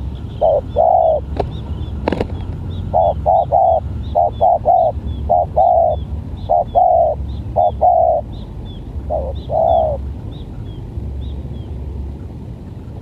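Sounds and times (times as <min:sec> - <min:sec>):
dove cooing: 0:00.0 - 0:08.3, 0:09.0 - 0:10.1.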